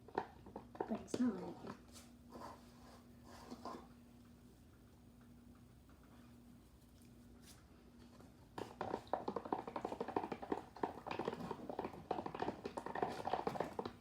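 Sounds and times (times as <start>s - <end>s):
slime being stirred and squished: 0.0s - 3.9s, 8.4s - 14.0s.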